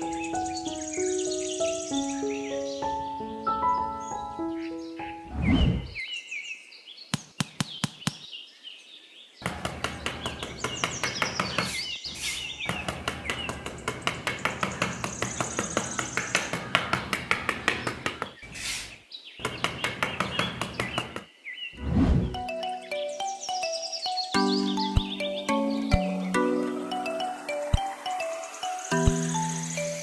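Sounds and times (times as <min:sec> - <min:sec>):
small birds chirping: 0:00.0 - 0:30.0
rapid sharp tapping: 0:09.4 - 0:11.8, 0:12.6 - 0:18.4, 0:19.4 - 0:21.3.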